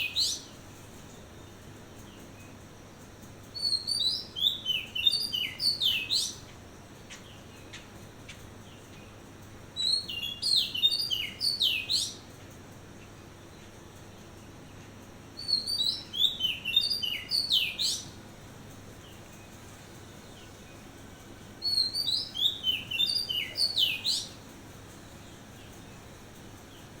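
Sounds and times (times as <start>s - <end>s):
bird singing whistled notes: 0.0s - 2.5s, 3.5s - 6.5s, 9.8s - 12.2s, 15.4s - 18.2s, 21.6s - 27.0s.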